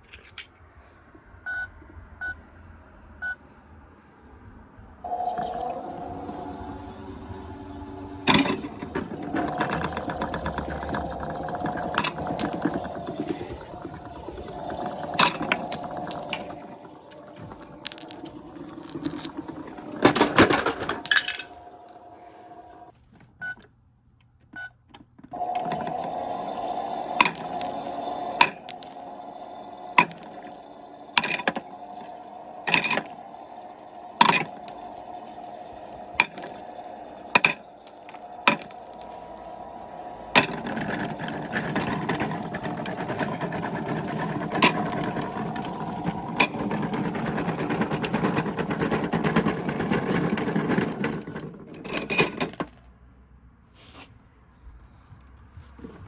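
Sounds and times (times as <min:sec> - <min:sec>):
small electric motor whirring: 0:05.1 - 0:22.9, 0:25.4 - 0:51.6.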